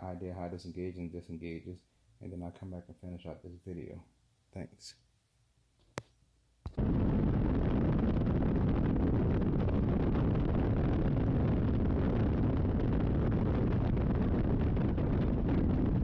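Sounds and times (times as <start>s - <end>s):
wind rushing on microphone: 6.7s - 16.0s.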